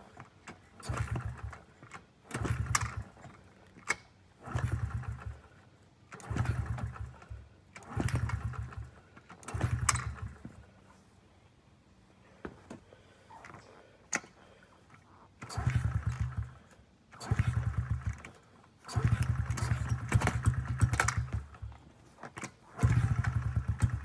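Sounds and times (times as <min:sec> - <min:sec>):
small engine being kick-started: 0:00.0 - 0:05.5, 0:06.1 - 0:10.6, 0:15.0 - 0:24.0.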